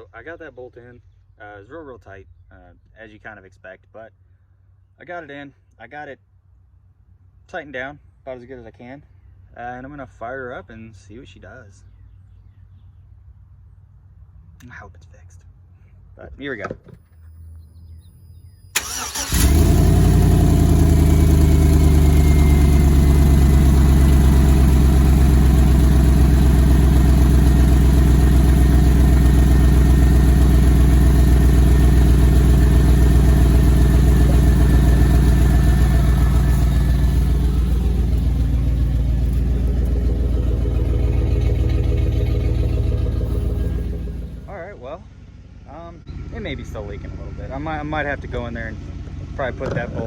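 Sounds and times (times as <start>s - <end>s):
engine cranking: 18.8s - 44.5s
engine idling: 18.8s - 50.0s.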